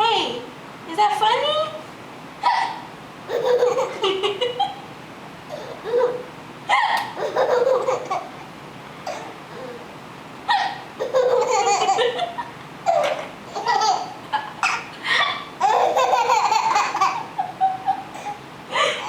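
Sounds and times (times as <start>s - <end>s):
baby laughing: 2.4s - 4.8s, 5.5s - 9.8s, 10.5s - 19.0s.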